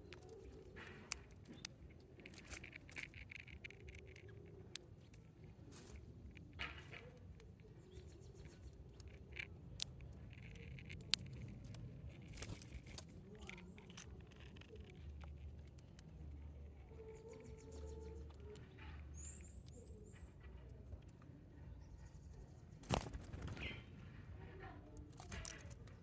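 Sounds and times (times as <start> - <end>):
sparrows pecking taps: 0.0 - 23.9
faint low rumble: 0.0 - 26.0
sparrow chirps: 7.4 - 11.7, 15.1 - 24.0.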